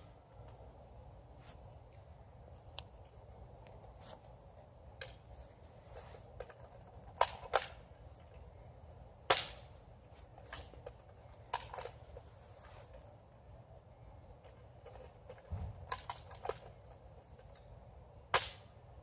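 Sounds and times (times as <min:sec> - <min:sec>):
toy dart blaster firing: 0:09.3 - 0:09.6, 0:18.3 - 0:18.7.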